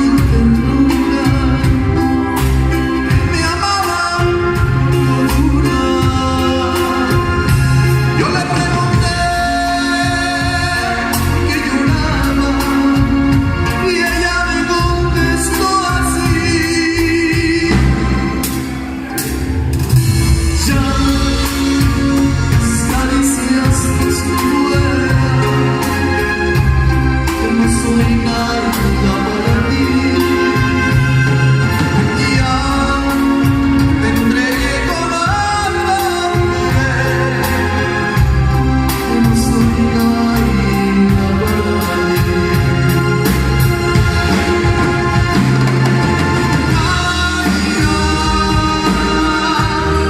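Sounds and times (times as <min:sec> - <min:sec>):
band music with low bass: 0:00.0 - 0:50.0
person singing: 0:00.0 - 0:50.0.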